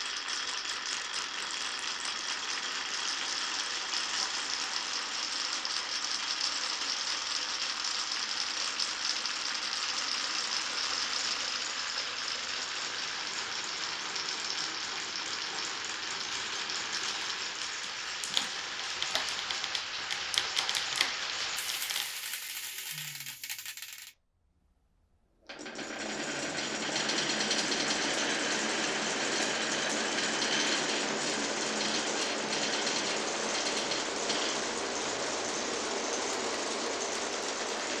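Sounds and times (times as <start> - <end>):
marbles rolling through wooden run: 0.2 - 24.1, 34.5 - 38.0.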